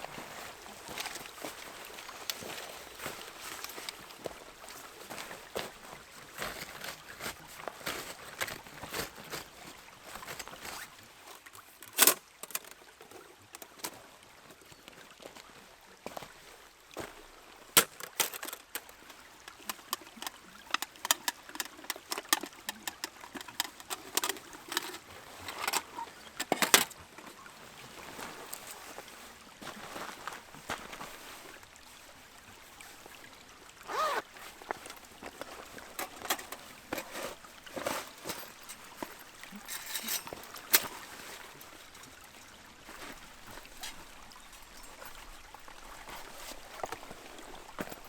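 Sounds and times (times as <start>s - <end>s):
gear clicks and clatter: 11.6s - 12.8s, 17.8s - 27.0s, 33.9s - 41.0s
rustling: 17.8s - 27.0s, 33.9s - 41.4s.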